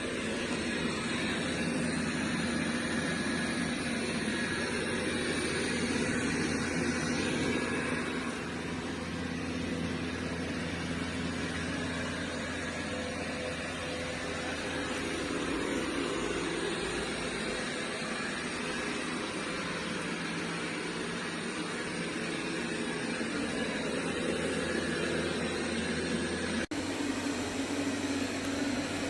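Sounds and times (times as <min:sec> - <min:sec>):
robot vacuum whirring: 0:00.0 - 0:29.0.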